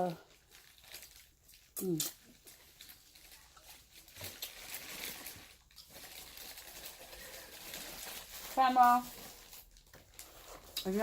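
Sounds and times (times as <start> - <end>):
seafood crackling while eaten: 0.0 - 7.5.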